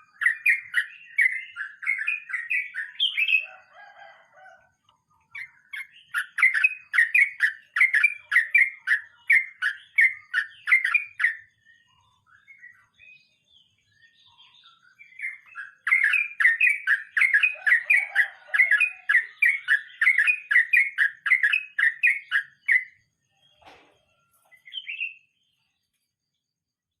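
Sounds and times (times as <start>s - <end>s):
bird singing rolling runs: 0.0s - 25.9s
short knock: 23.6s - 24.0s.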